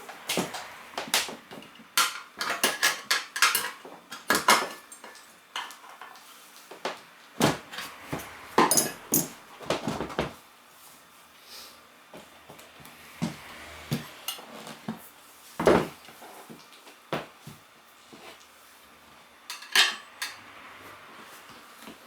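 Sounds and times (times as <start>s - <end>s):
metal tools knocking on wheel rim: 8.2s - 9.4s.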